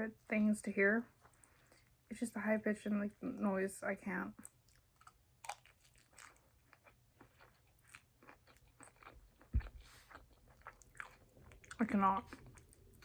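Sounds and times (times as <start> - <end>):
person chewing food: 4.4 - 13.0.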